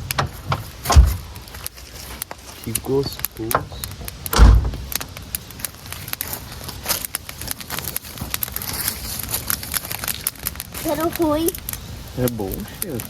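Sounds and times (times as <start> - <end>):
dull thump: 0.0 - 1.4, 3.5 - 5.0
campfire crackling and popping: 0.0 - 13.0.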